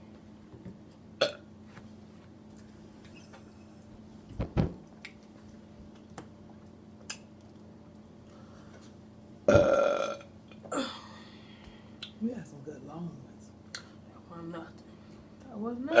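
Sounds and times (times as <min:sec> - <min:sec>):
person burping: 0:01.2 - 0:01.5, 0:09.5 - 0:11.2.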